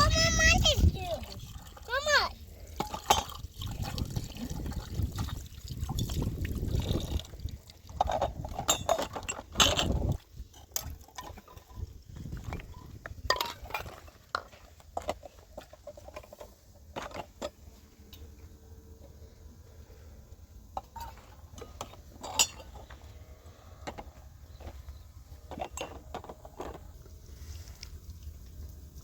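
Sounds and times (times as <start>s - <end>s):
dishes clinking and knocking: 8.0s - 10.0s.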